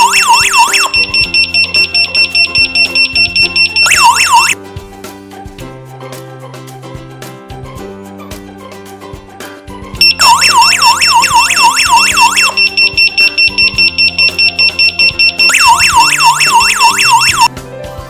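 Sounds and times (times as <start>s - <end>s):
electronic alarm wailing and beeping: 0.0s - 4.6s, 10.0s - 17.5s.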